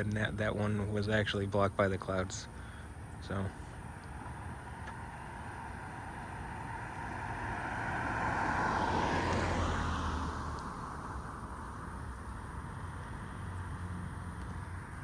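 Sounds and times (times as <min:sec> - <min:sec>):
vehicle passing by: 0:04.5 - 0:15.0.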